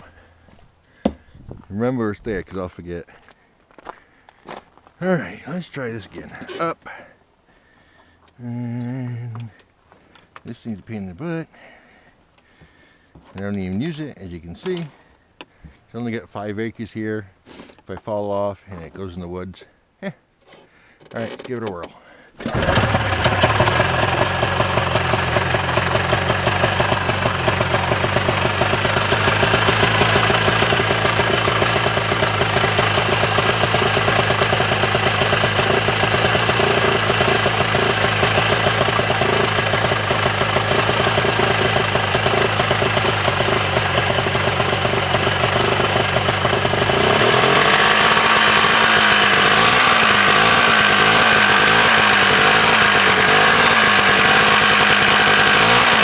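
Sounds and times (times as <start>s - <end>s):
snowmobile engine running: 22.4s - 56.0s.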